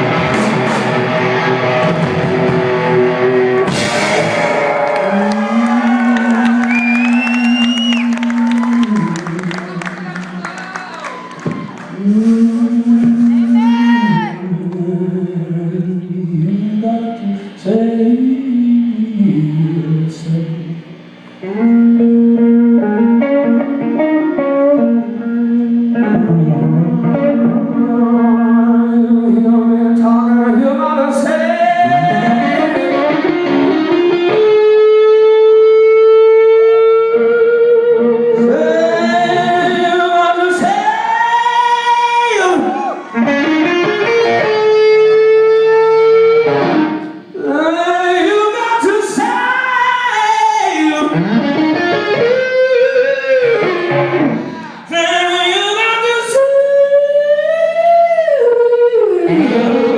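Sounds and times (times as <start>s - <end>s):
electric guitar held notes: 0.0s - 11.9s, 20.7s - 29.9s, 31.8s - 40.0s, 42.7s - 47.4s, 51.0s - 54.9s
live rock band playing: 0.0s - 13.6s, 21.5s - 28.8s, 31.8s - 40.8s, 42.2s - 47.3s, 51.0s - 54.9s.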